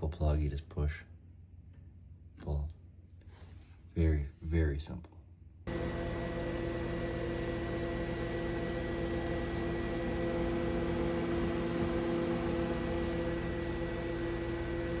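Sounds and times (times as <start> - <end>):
refrigerator fan motor humming: 5.7 - 15.0.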